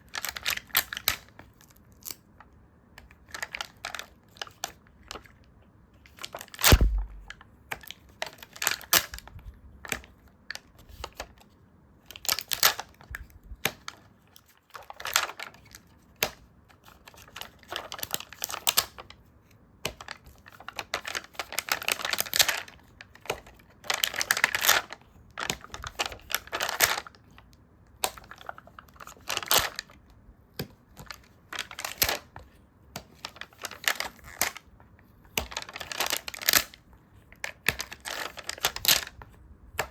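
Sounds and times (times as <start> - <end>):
dull thump: 6.7 - 7.3.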